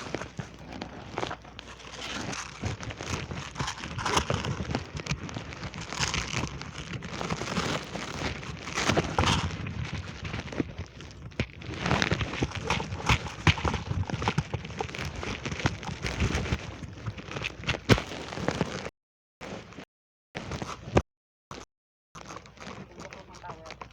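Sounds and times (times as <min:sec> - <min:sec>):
rustling and crinkling gear: 0:00.0 - 0:23.9.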